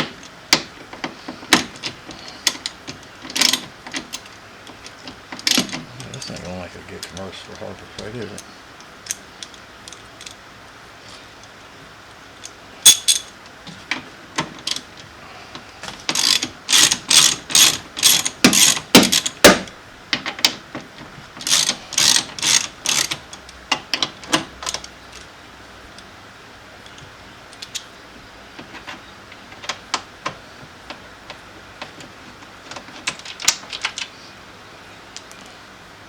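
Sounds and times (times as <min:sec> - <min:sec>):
hand ratchet clicking: 0:16.1 - 0:19.7, 0:21.4 - 0:23.3.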